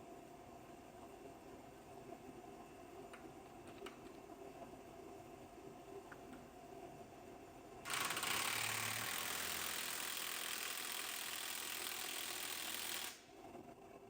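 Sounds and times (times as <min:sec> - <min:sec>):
power tool rattling whir: 0:07.9 - 0:13.3.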